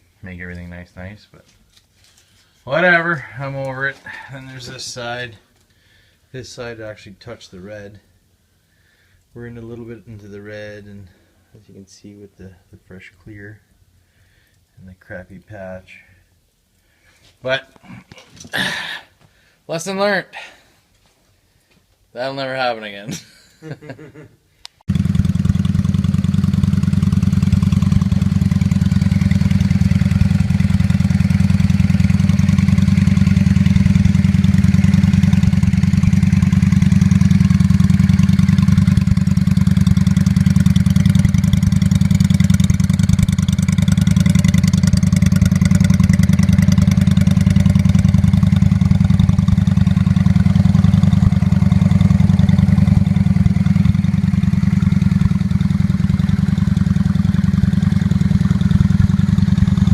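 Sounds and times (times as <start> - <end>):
motorcycle engine running steadily: 24.9 - 59.9.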